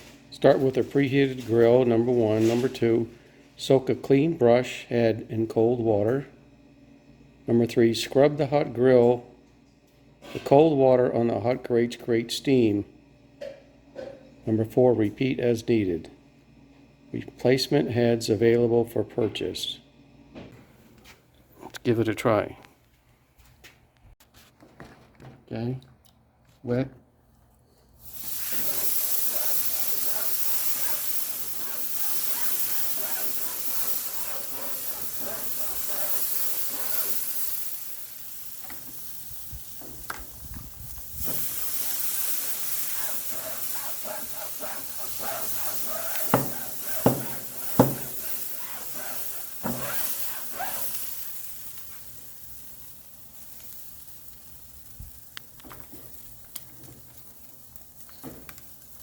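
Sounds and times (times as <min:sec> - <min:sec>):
water sizzling on hot grill: 0:28.0 - 0:59.0
brush scrubbing grill grates: 0:28.1 - 0:39.8, 0:41.2 - 0:52.2.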